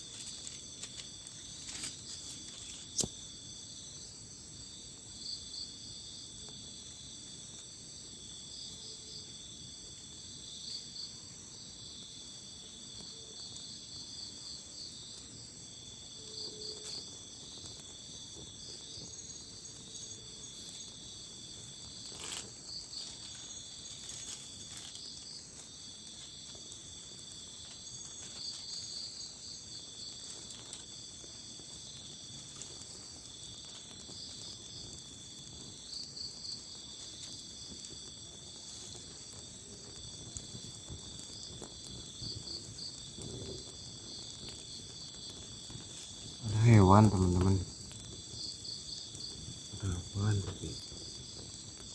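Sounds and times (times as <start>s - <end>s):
crickets chirring: 0.0s - 51.9s.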